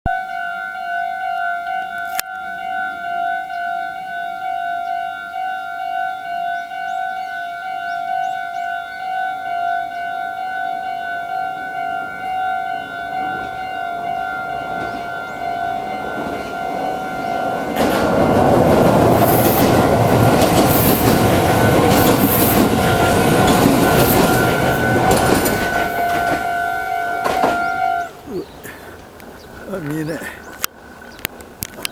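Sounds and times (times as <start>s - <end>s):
level crossing warning bell: 0.1s - 28.6s
electric train passing: 0.1s - 29.9s
train wheel clatter: 14.4s - 28.1s.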